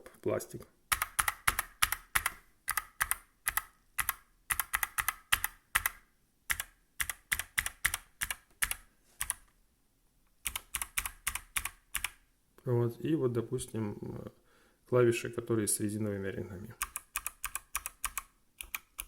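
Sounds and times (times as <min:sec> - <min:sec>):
mechanical keyboard clicks: 0:00.9 - 0:09.4, 0:10.4 - 0:12.2, 0:16.8 - 0:19.0.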